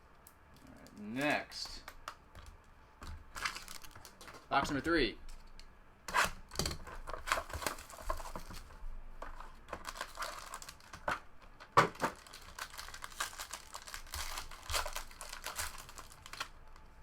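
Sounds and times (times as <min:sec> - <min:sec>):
plastic wrapping crinkling and tearing: 0:03.3 - 0:04.4, 0:07.0 - 0:17.0.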